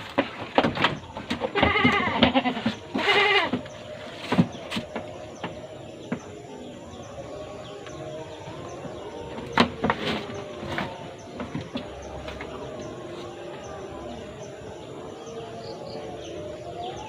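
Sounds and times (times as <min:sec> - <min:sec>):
goat bleating: 0:01.4 - 0:03.6.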